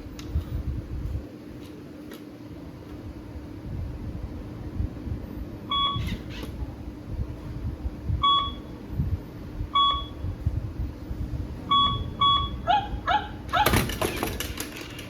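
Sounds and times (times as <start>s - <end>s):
short electronic beeps: 5.7s - 6.2s, 8.2s - 8.7s, 9.8s - 10.2s, 11.7s - 12.6s
robot dog electronic barks: 12.3s - 14.0s.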